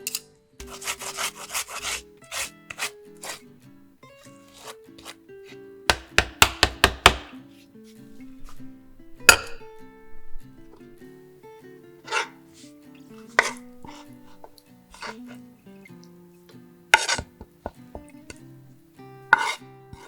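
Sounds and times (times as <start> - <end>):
background music: 0.0 - 20.0
knife chopping on cutting board: 0.6 - 3.4, 4.5 - 5.2, 5.9 - 7.4, 17.0 - 18.2, 19.4 - 20.0.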